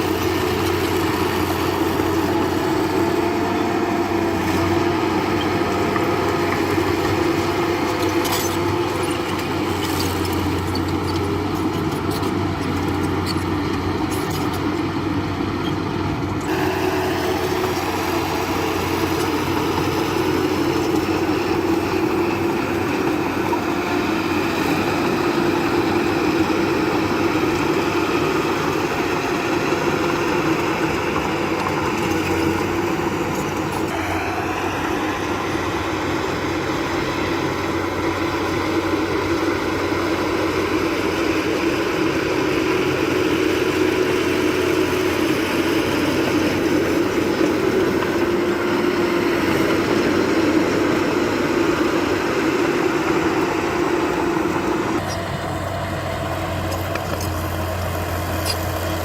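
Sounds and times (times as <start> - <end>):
heavy machinery diesel engine running: 0.0 - 59.0.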